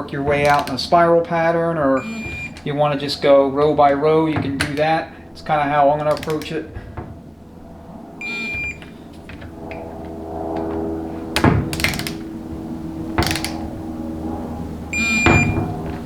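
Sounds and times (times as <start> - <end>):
sharp metallic clacks: 0.2 - 6.8, 13.2 - 13.8
high-pitched tool tone: 2.0 - 2.6, 8.2 - 8.9.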